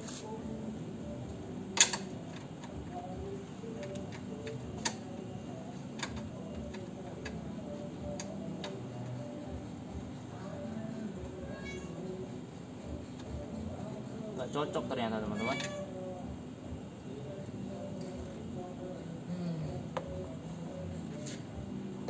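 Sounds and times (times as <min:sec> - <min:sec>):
metal hardware clicks and taps: 0:01.8 - 0:02.8, 0:03.8 - 0:05.0, 0:06.0 - 0:07.4.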